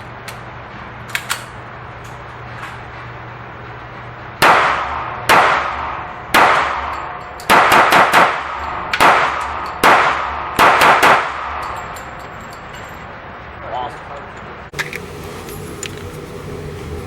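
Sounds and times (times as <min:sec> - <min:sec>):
pistol shots with ringing echo: 0:04.4 - 0:11.9.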